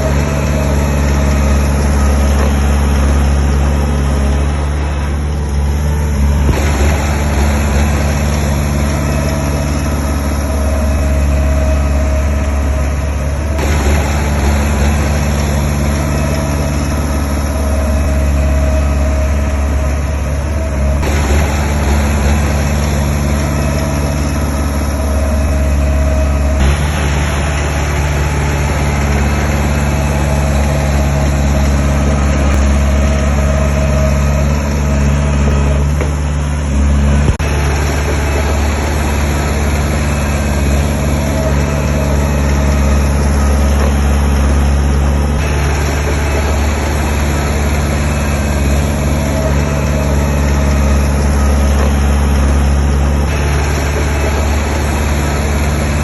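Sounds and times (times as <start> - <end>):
heavy diesel engine droning: 0.0 - 56.0.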